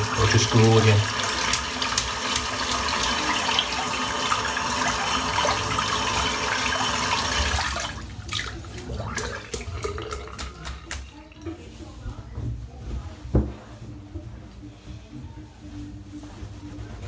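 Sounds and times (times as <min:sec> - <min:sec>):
tap water running into sink: 0:00.0 - 0:11.6.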